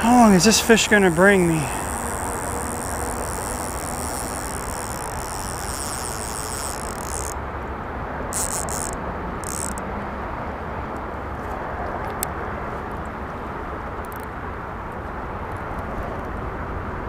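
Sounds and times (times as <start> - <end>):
crickets chirping: 0.0 - 7.4, 8.3 - 9.8.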